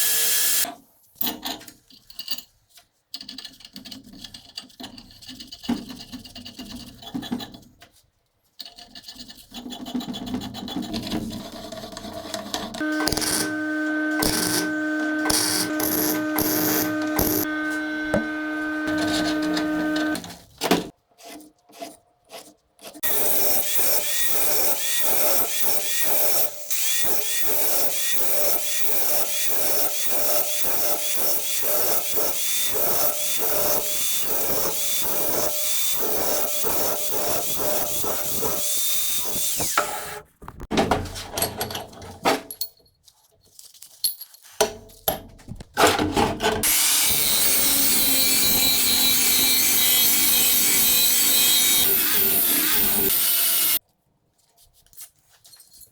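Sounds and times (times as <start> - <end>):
power tool running: 0.0 - 0.7, 12.8 - 20.3, 23.0 - 40.2, 46.6 - 53.8
hand tool stroking metal: 12.8 - 20.2, 46.6 - 53.8.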